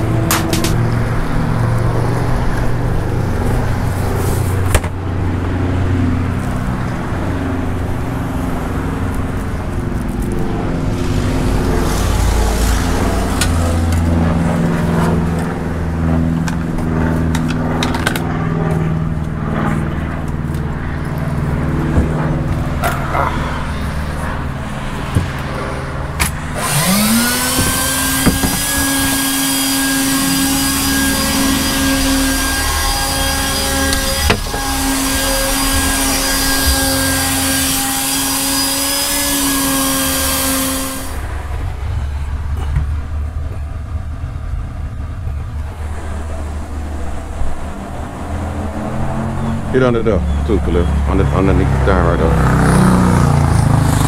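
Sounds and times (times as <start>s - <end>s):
vacuum cleaner motor whine: 26.5s - 41.3s.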